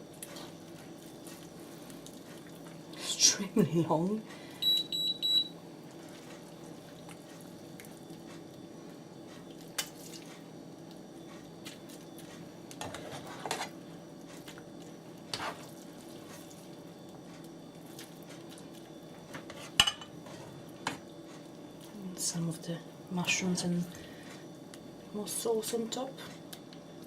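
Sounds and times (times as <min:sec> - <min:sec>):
utensils scraping on pan: 0:12.8 - 0:13.7.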